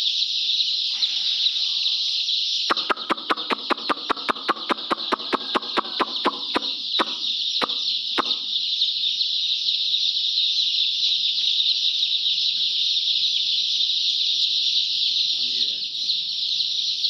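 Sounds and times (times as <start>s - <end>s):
chicks peeping: 0.0s - 17.0s
sharp clicks: 2.7s - 8.4s.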